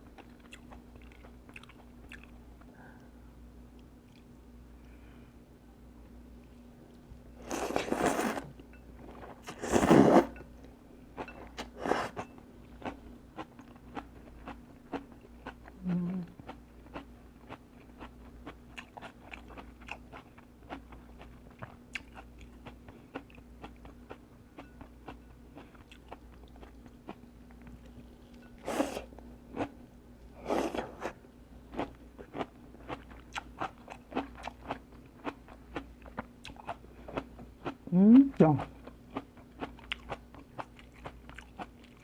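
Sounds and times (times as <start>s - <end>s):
crunchy chewing: 30.4s - 37.8s, 38.6s - 42.0s.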